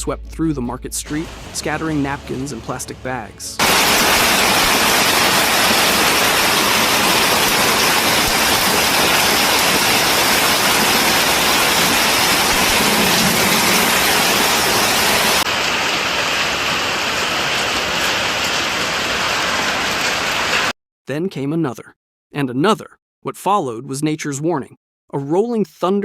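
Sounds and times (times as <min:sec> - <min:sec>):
heavy rain: 0:01.1 - 0:02.7, 0:03.6 - 0:20.7.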